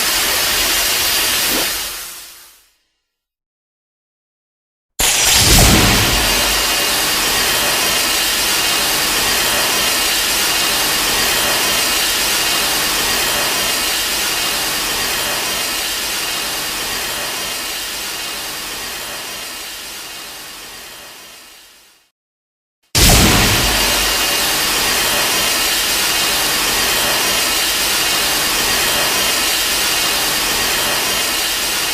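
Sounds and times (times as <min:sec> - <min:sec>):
hissing mechanical rush: 0:05.0 - 0:17.7, 0:23.0 - 0:31.9.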